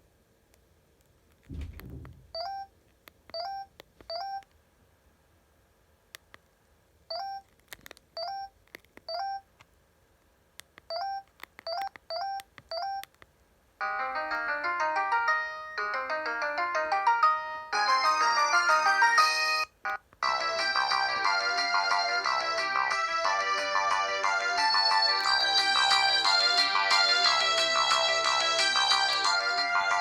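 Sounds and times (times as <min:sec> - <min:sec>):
electronic ringtone melody: 0:13.8 - 0:30.0.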